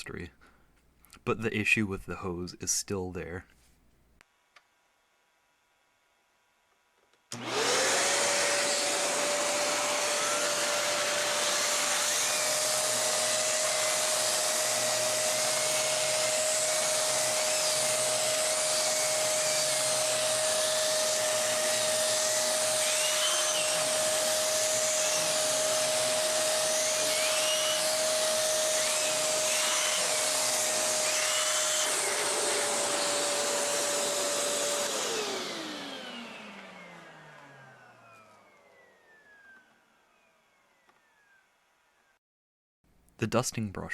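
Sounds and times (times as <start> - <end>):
vacuum cleaner running: 7.3 - 42.2
vacuum motor winding down: 7.3 - 42.2.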